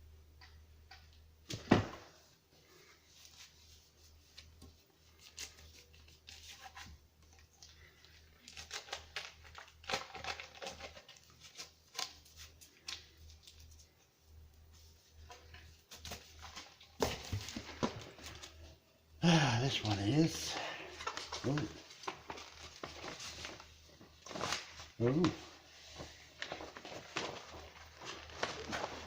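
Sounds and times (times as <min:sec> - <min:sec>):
packaging rustling and clicking: 0:05.2 - 0:13.7, 0:26.0 - 0:29.0.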